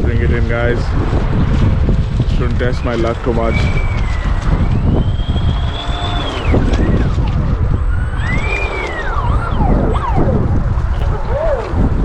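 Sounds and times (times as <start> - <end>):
wind rumbling on microphone: 0.0 - 12.0
electric motor whining: 3.6 - 11.1.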